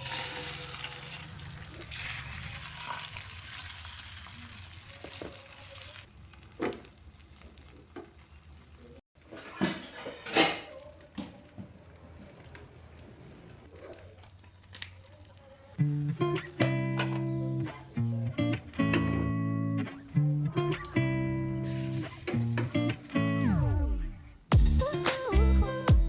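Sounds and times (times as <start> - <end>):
food sizzling in oil: 0.0 - 8.8.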